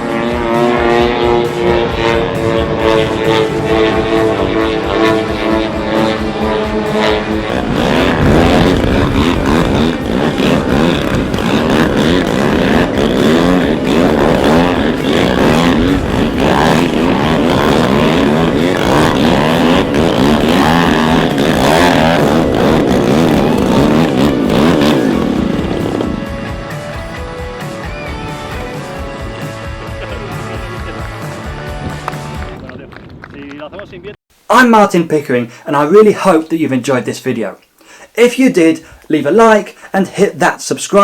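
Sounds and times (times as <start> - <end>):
model aircraft engine running hard: 0.0 - 31.7.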